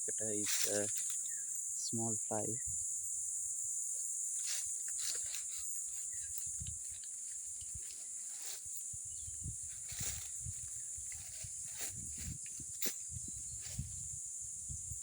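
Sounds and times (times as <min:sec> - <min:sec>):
crickets chirping: 0:00.0 - 0:15.0
low thumps and rustles: 0:09.3 - 0:14.1.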